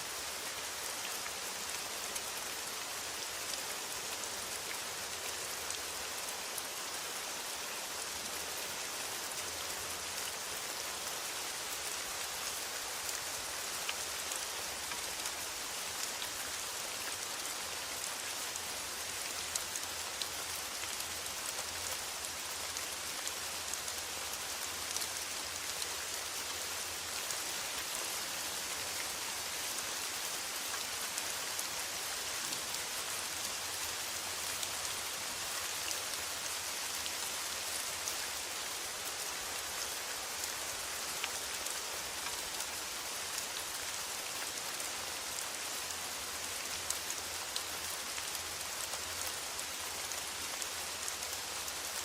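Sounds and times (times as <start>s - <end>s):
rain on a metal roof: 0.0s - 52.0s.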